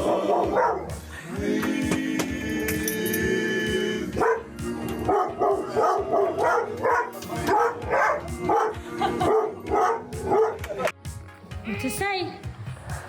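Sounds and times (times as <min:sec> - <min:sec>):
dog barking: 0:00.0 - 0:00.9, 0:04.2 - 0:04.4, 0:05.1 - 0:10.9.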